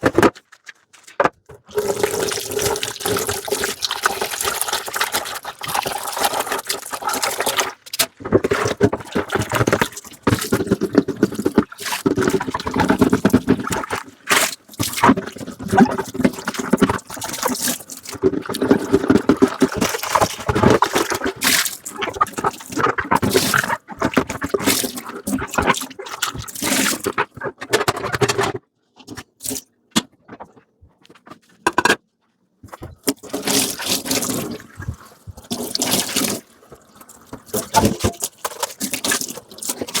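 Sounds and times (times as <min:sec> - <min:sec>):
tap water splashing in sink: 0:32.8 - 0:40.0.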